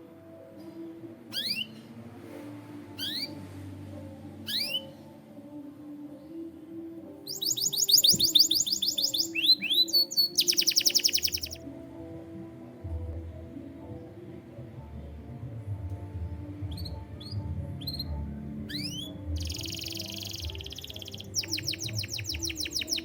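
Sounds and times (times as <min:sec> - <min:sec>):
soft background music: 0:00.0 - 0:23.0
canary chirping and trilling: 0:01.3 - 0:01.8, 0:02.9 - 0:03.4, 0:04.4 - 0:04.9, 0:07.3 - 0:11.6, 0:16.6 - 0:23.0.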